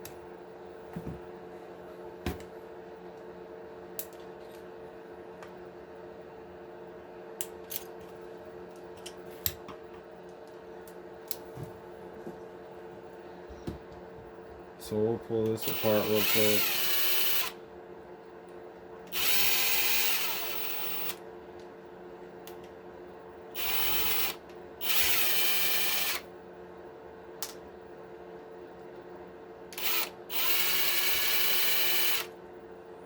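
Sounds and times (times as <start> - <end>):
cordless drill whirring: 15.6 - 17.6, 19.1 - 21.2, 23.6 - 26.2, 29.8 - 32.3.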